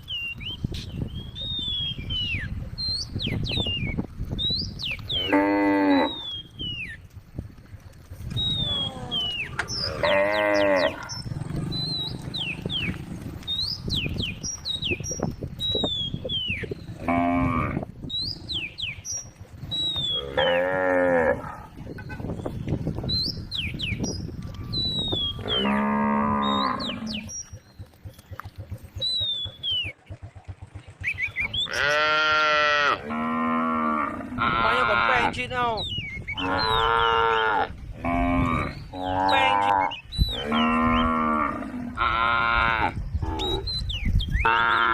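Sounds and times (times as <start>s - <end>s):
cattle mooing: 5.1s - 6.4s, 8.6s - 13.3s, 17.0s - 17.8s, 20.1s - 21.8s, 25.4s - 27.3s, 31.6s - 35.4s, 36.4s - 43.7s, 44.4s - 44.9s.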